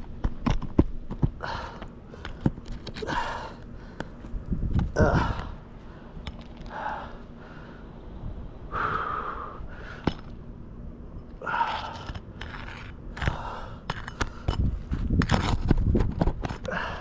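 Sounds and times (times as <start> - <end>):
pry tool scraping shingles: 0.0 - 4.1, 11.5 - 17.0.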